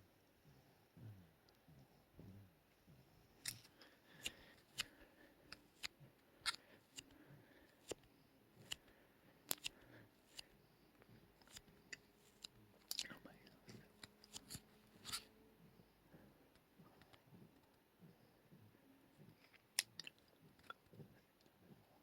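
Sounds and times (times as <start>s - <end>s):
sharp clicks: 7.8s - 10.5s.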